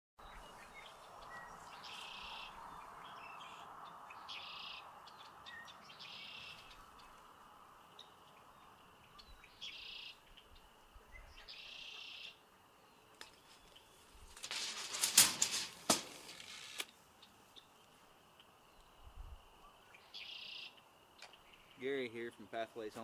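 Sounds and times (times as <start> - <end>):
distant road traffic hum: 0.7 - 9.1.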